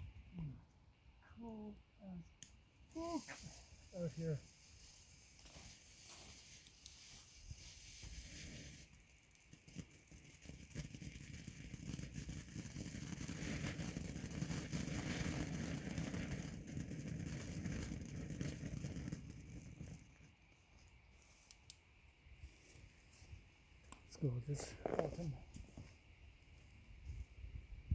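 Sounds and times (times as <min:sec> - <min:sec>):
firework crackling fizz: 0:02.9 - 0:20.4.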